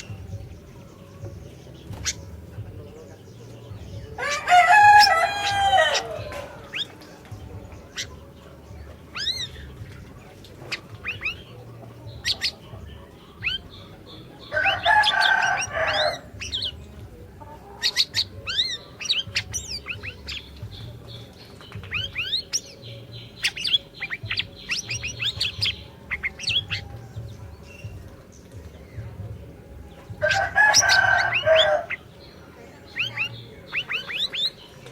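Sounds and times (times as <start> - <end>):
songbird whistled chirps: 0.0 - 17.0, 17.7 - 34.9
rooster crowing: 4.2 - 6.6, 14.5 - 16.3, 30.2 - 32.0.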